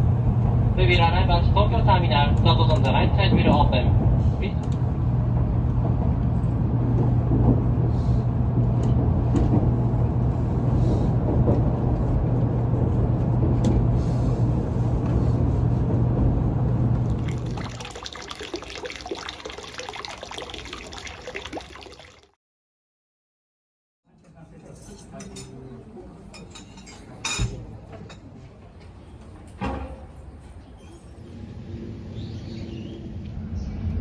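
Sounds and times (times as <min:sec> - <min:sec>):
train running rumble: 0:00.0 - 0:17.2.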